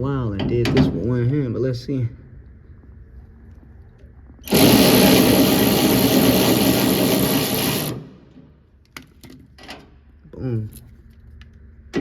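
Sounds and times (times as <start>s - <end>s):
electric ratchet motor whirring: 4.4s - 8.2s.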